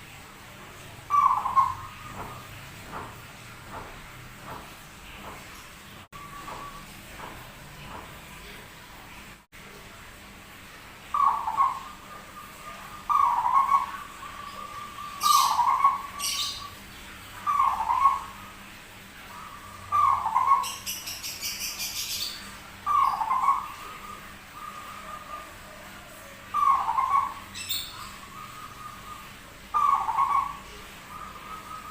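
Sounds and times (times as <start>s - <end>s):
dove cooing: 1.1s - 3.0s, 11.1s - 16.7s, 17.4s - 18.4s, 19.3s - 20.9s, 22.9s - 31.9s.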